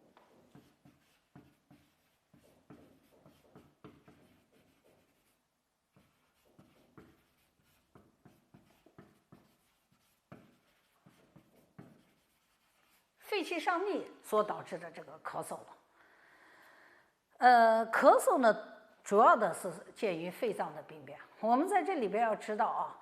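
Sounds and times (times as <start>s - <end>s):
pen scratching while writing: 0.1s - 13.1s.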